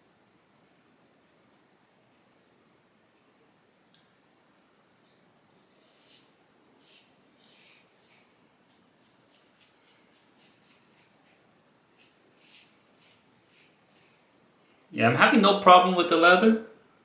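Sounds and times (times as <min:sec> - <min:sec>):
razor scraping stubble: 0:05.0 - 0:08.3, 0:12.0 - 0:14.4.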